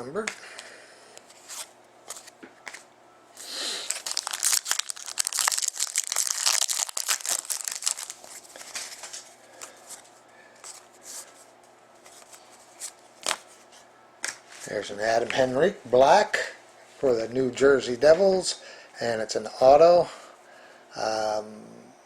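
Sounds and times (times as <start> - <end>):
plastic wrapping tearing and crinkling: 3.7 - 9.2.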